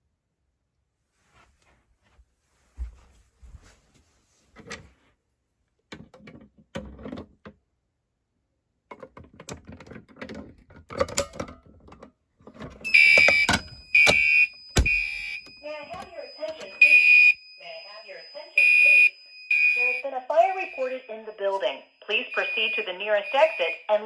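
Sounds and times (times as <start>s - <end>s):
rustling: 1.1s - 5.2s
fire alarm horn pulsing: 12.8s - 24.0s.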